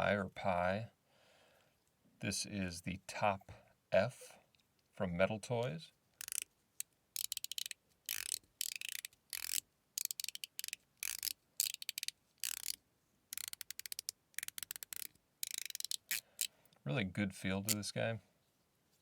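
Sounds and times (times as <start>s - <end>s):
fidget slider rattling clicks: 6.2s - 6.5s, 7.2s - 16.5s.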